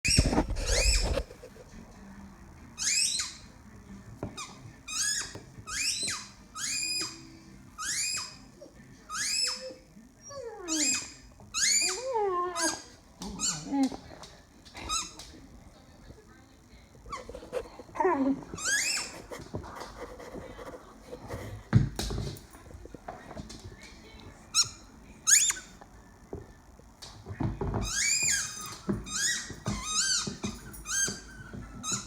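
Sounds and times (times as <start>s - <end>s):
dog chewing squeaky toy: 0.0s - 1.4s, 2.8s - 3.5s, 4.4s - 13.7s, 17.1s - 19.5s, 24.5s - 25.8s, 27.8s - 32.0s.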